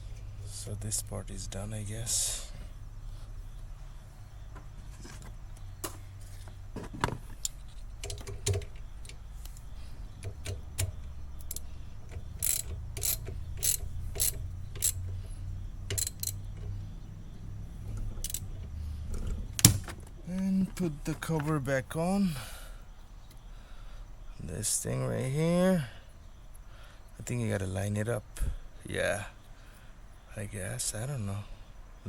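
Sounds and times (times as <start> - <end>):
hand tools clicking on metal: 7.4 - 16.8, 18.0 - 19.8.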